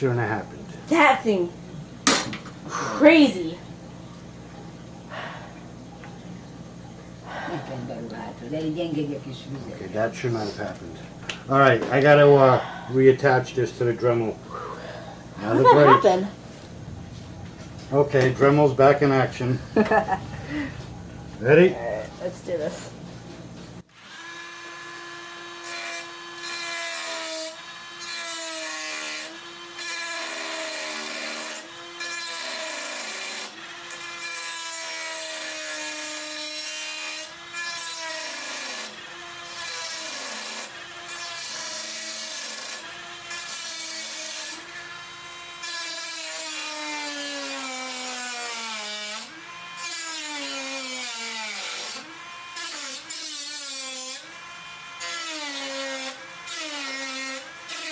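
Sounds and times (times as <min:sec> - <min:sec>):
rotary tool motor whine: 0:23.9 - 0:57.9.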